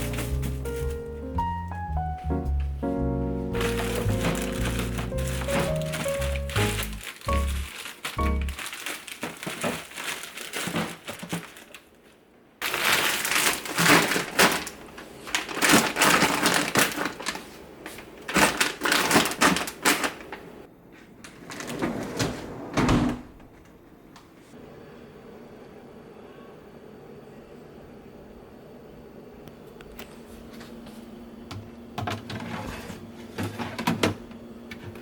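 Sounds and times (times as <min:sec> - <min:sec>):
plastic crinkling and rustling: 0:00.0 - 0:01.2, 0:03.6 - 0:22.1
objects clicking and knocking: 0:03.6 - 0:11.7.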